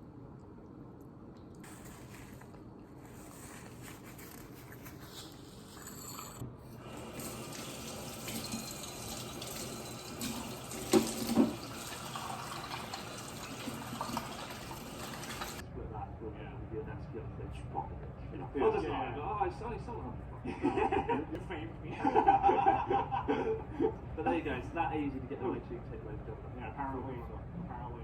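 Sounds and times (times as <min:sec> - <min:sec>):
tap water running into sink: 0:06.8 - 0:15.6.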